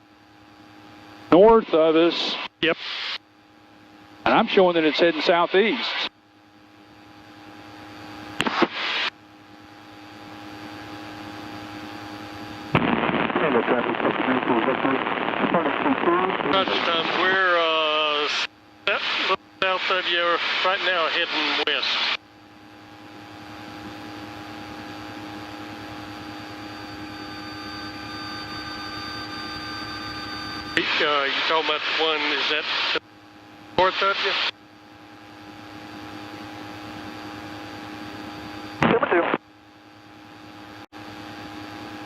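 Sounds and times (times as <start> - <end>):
radio static burst: 1.3 - 3.2, 4.3 - 6.1, 8.4 - 9.1, 12.7 - 22.2, 28.0 - 33.0, 33.8 - 34.6, 38.8 - 39.4
radio clicks: 8.4 - 9.1
aircraft engine drone: 9.7 - 39.1.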